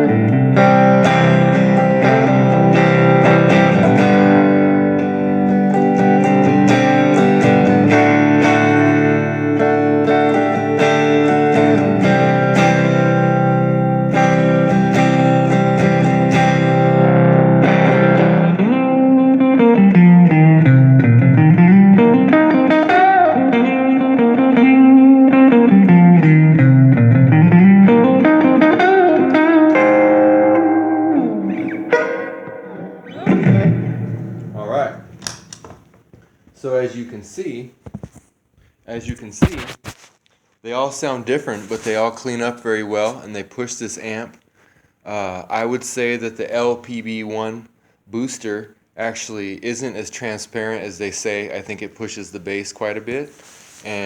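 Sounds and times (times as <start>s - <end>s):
electric guitar chords and lead: 0.0s - 35.8s.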